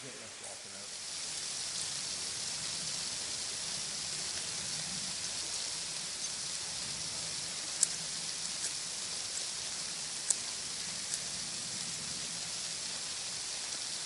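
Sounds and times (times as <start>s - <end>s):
falling water hissing: 0.0s - 14.0s
sharp ticks: 5.5s - 11.4s.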